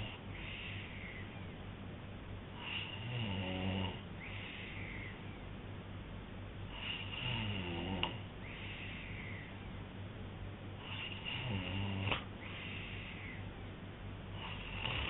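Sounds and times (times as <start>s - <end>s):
man snoring: 2.6s - 5.0s, 6.7s - 8.2s, 10.8s - 13.2s, 14.4s - 15.0s.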